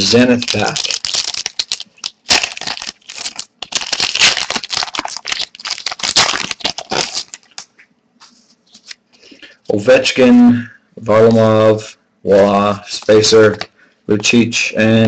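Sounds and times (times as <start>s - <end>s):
foil wrapper tearing and crinkling: 0.0s - 7.7s
cards being handled: 0.0s - 9.0s.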